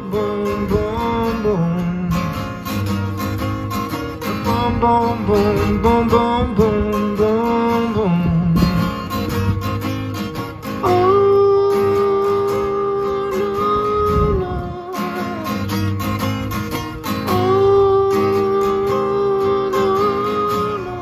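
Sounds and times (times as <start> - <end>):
acoustic guitar strumming: 0.0 - 21.0
long held sung notes: 10.8 - 15.8, 17.2 - 21.0.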